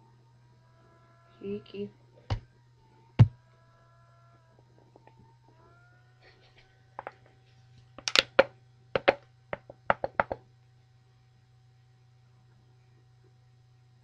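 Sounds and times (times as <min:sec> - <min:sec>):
sharp knocks: 0:08.2 - 0:10.4.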